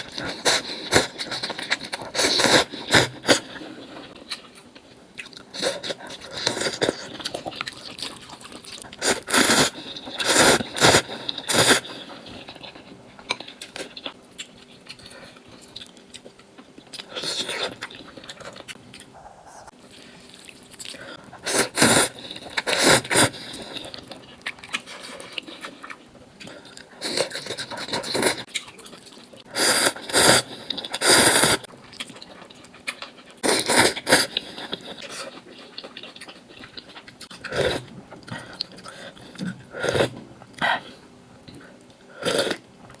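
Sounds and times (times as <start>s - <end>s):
quiet chewing: 0.0s - 43.0s
loud noodle slurps: 9.0s - 11.8s, 29.6s - 31.6s.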